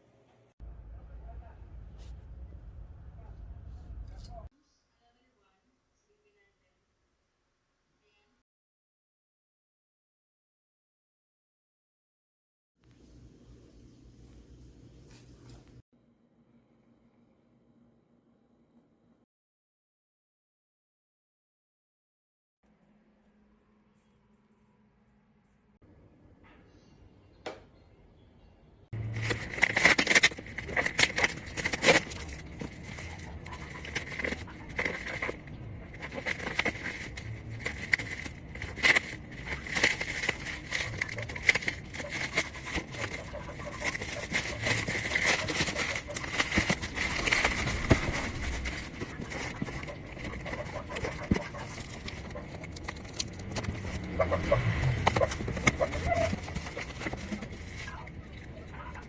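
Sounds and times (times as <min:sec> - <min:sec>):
clicks and scraping: 0:29.0 - 0:59.0.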